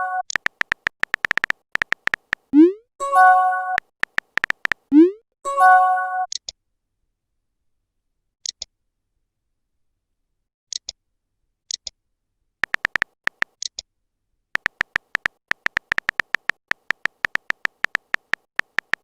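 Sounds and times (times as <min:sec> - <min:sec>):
phone keyboard typing clicks: 0:00.3 - 0:02.7, 0:03.8 - 0:05.0, 0:12.6 - 0:13.7, 0:14.6 - 0:19.0
chat app double pops: 0:00.3 - 0:02.8, 0:03.8 - 0:05.2, 0:12.6 - 0:13.5, 0:14.6 - 0:19.0.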